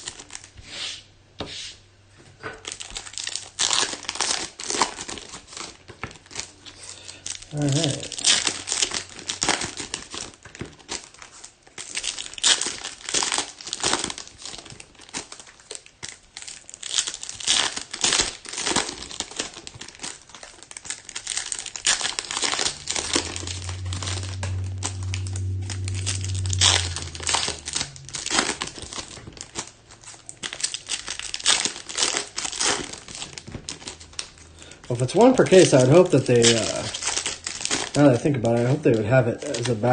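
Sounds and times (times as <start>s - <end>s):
plastic wrapping crinkling and tearing: 0.0s - 0.5s, 2.5s - 39.9s
steady low hum: 21.5s - 39.9s.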